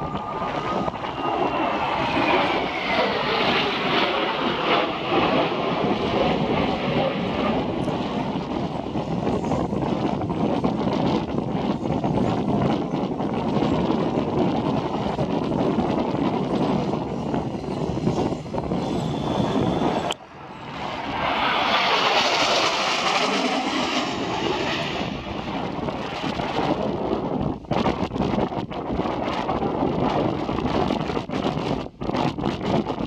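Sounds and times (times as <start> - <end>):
jet aircraft roar: 0.0 - 33.0
wind buffeting microphone: 0.0 - 33.0.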